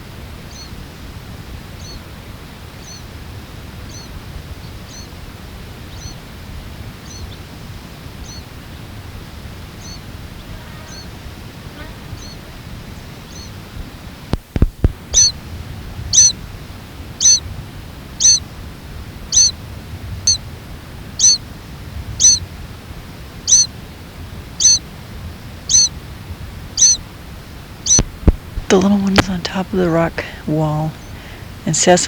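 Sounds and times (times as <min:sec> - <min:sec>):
fledgling bird screechy calls: 0:15.2 - 0:15.4, 0:16.1 - 0:16.4, 0:17.2 - 0:17.4, 0:18.2 - 0:18.4, 0:19.3 - 0:19.6, 0:21.2 - 0:21.4, 0:22.2 - 0:22.5, 0:23.5 - 0:23.7, 0:24.6 - 0:24.8, 0:25.7 - 0:25.9, 0:26.8 - 0:27.0, 0:27.8 - 0:28.1.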